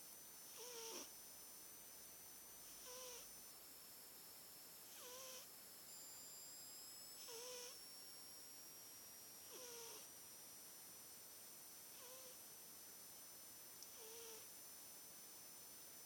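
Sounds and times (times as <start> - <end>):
cat snoring: 0.5 - 1.1, 2.6 - 3.3, 4.9 - 5.5, 7.2 - 7.8, 9.4 - 10.1, 11.9 - 12.4, 13.9 - 14.5.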